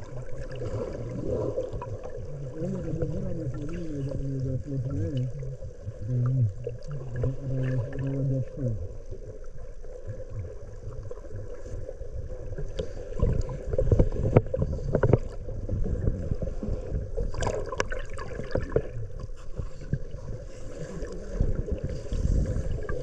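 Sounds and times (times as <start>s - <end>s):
water sloshing and bubbling: 0.0s - 23.0s
splashes and knocks: 17.3s - 19.3s.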